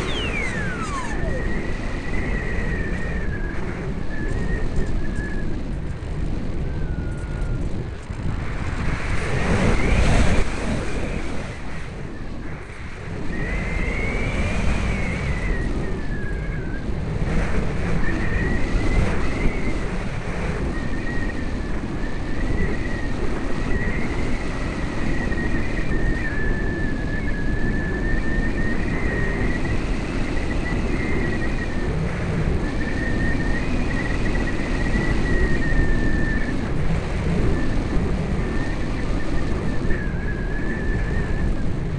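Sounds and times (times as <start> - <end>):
electric motor whining: 0.0 - 5.3
wind rush on microphone: 0.0 - 41.9.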